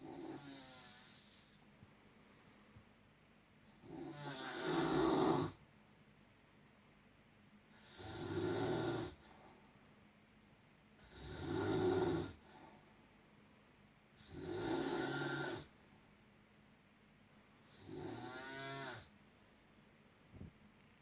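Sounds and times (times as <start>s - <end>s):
person snoring: 0.0s - 1.5s, 3.8s - 5.6s, 11.0s - 12.4s, 14.2s - 15.7s, 17.7s - 19.1s.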